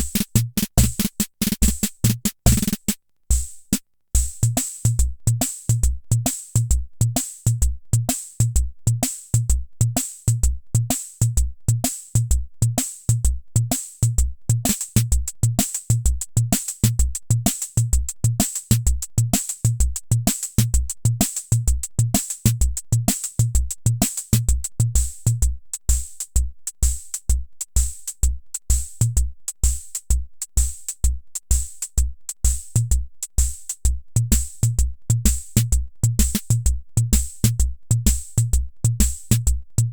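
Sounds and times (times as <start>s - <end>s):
bass drum thumps: 0.0s - 3.6s, 4.2s - 39.9s
hi-hat hits: 0.0s - 5.8s, 14.0s - 39.6s.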